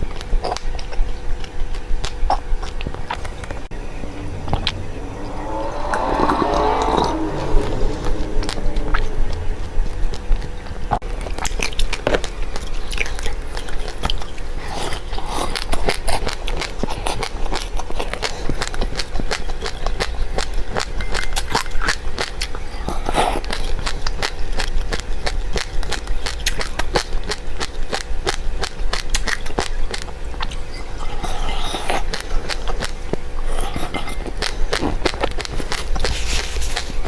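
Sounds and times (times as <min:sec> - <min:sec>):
dry seeds being chewed: 0:11.1 - 0:37.0.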